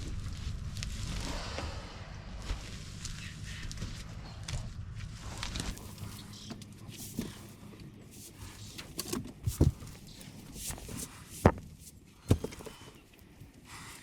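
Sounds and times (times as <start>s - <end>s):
sharp knocks and thuds: 8.2s - 12.9s.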